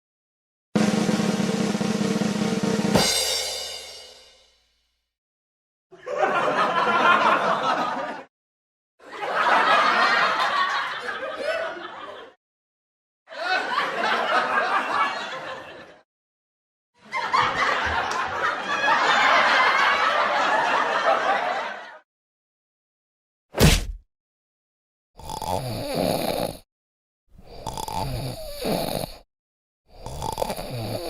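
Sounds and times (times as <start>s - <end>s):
laughter sound effects: 5.9s - 8.3s, 9.0s - 12.4s, 13.3s - 16.0s, 17.0s - 22.0s.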